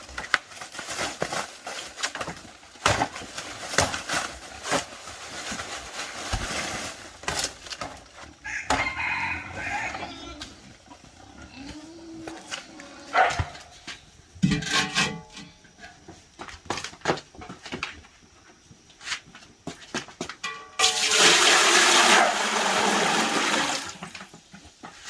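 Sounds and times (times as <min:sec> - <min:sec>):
water gushing: 0:20.8 - 0:24.2.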